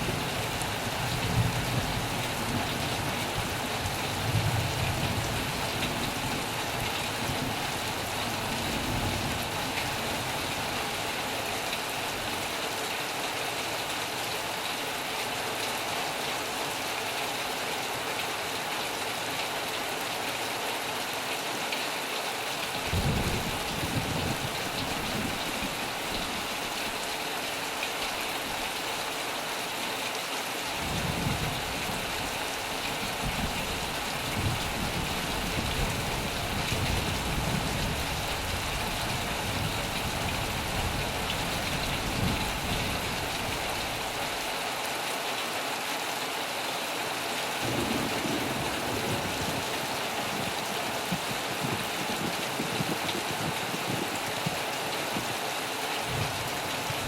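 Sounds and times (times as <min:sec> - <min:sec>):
heavy rain on a metal roof: 0:00.0 - 0:57.0
low thunder rumbles: 0:22.9 - 0:25.8, 0:33.0 - 0:43.0, 0:47.6 - 0:54.6.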